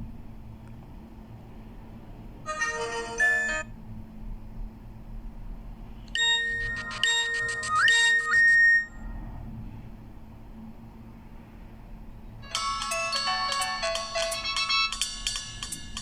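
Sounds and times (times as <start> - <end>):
phone ringtone chime: 2.5 - 3.7, 6.2 - 8.9, 12.5 - 16.0
bell-like ringtone phrase: 6.2 - 8.9.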